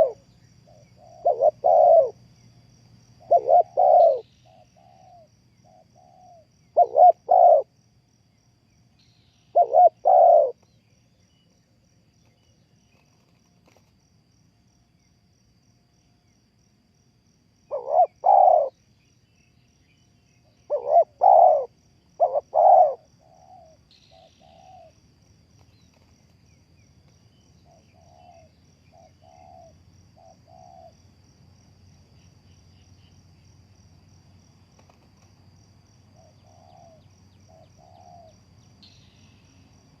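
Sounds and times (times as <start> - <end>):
doves cooing: 0.0 - 2.2, 3.2 - 7.7, 9.6 - 10.6, 17.7 - 18.7, 20.7 - 23.8, 27.7 - 31.0, 36.2 - 38.3.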